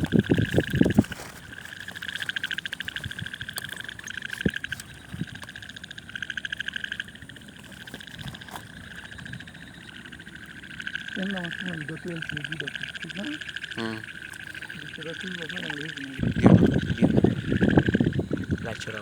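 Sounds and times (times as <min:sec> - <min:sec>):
frogs trilling: 0:00.0 - 0:19.0.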